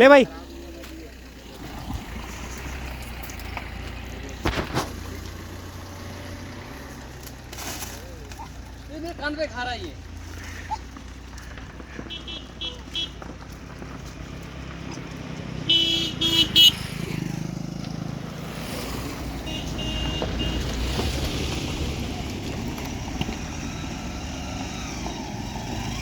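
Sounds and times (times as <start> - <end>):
engine rumble of passing vehicles: 0.0 - 26.0
vehicle horn beeping: 11.9 - 13.3, 15.6 - 17.0, 19.4 - 20.9
faint horn: 19.3 - 21.0.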